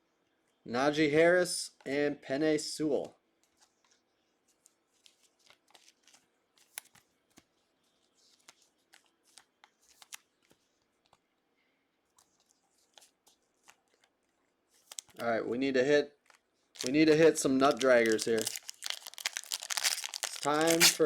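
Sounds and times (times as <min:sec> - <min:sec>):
trading cards rustling: 0:05.0 - 0:07.5, 0:08.2 - 0:11.2, 0:14.8 - 0:15.2, 0:16.2 - 0:21.0
cards clicking: 0:16.8 - 0:21.0.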